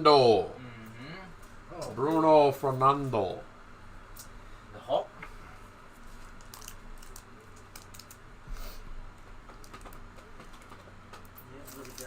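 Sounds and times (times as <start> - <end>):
trading cards clicking and rustling: 6.3 - 8.2, 9.2 - 12.0.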